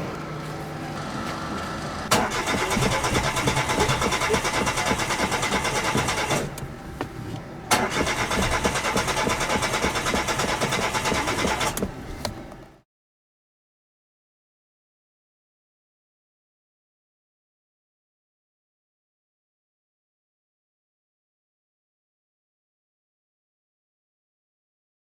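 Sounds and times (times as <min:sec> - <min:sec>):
starter motor cranking engine: 0:00.9 - 0:12.6
starter click: 0:02.1 - 0:12.7.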